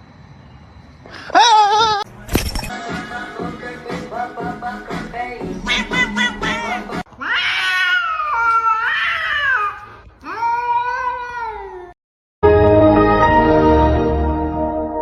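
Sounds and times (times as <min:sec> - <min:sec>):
cat meowing: 0:05.6 - 0:12.0
music with held notes: 0:12.4 - 0:15.0.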